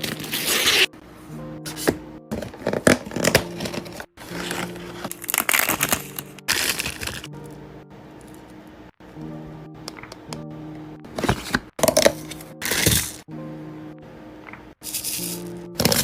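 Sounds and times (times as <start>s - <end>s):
background music: 0.0s - 16.0s
plastic packaging crinkling: 2.4s - 7.3s.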